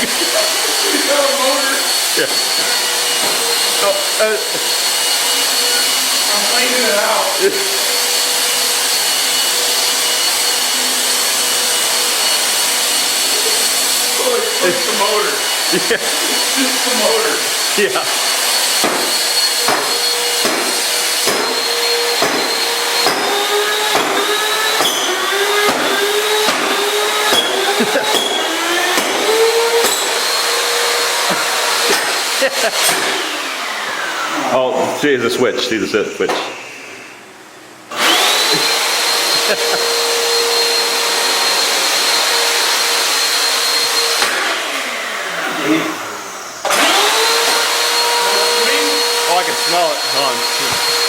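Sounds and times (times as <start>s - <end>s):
vacuum cleaner motor whining: 0.0s - 35.1s, 36.6s - 51.0s
sharp knocking: 18.8s - 21.6s, 22.2s - 23.3s.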